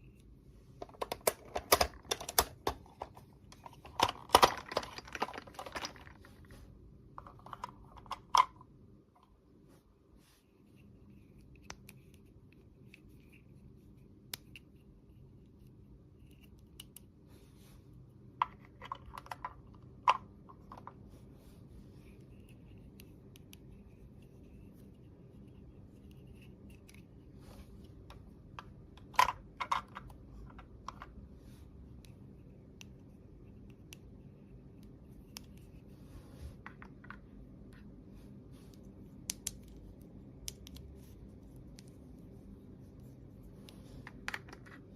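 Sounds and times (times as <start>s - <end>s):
faint steady hum: 0.0s - 44.9s
plastic toy pieces clicking: 0.8s - 3.1s, 3.8s - 6.1s
toy pieces clattering: 0.8s - 6.4s.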